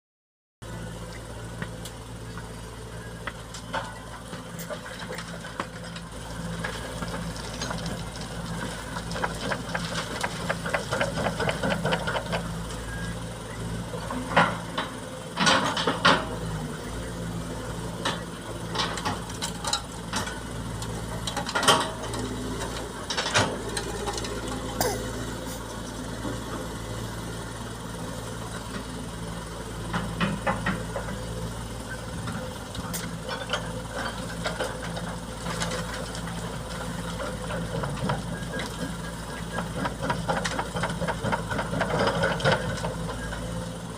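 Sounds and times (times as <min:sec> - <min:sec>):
diesel engines running: 0:00.6 - 0:43.9
clanks and rattles: 0:18.0 - 0:25.0.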